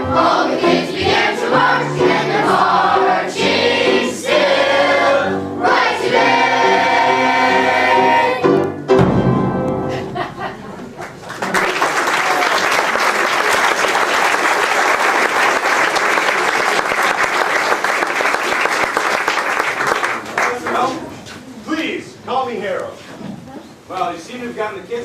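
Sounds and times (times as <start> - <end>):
audience applause: 10.8 - 21.0.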